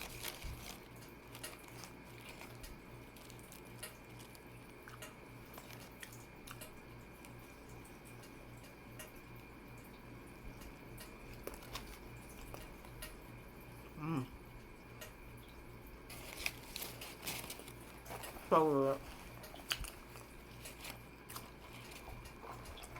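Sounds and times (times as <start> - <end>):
wet chewing: 0.0 - 8.3, 11.0 - 13.2, 16.1 - 22.9
steady low hum: 0.0 - 22.9.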